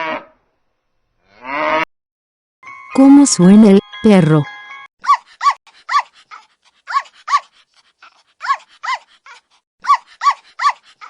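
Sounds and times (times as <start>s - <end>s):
dog yapping: 5.0s - 11.0s.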